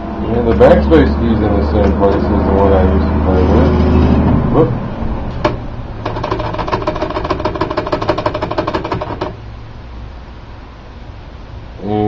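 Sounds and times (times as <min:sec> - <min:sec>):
typewriter mechanism clicking: 0:05.4 - 0:09.4
typewriter key clack: 0:06.1 - 0:09.4.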